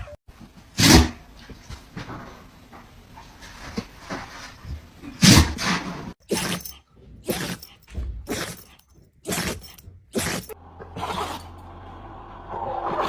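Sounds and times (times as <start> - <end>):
dog sneezing: 5.2 - 11.5.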